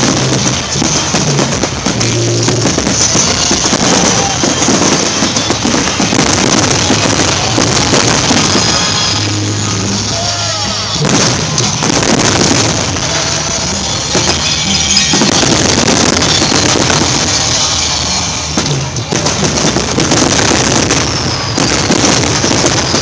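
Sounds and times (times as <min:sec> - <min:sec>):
fireworks exploding: 0:00.0 - 0:23.0
loud music: 0:00.0 - 0:23.0.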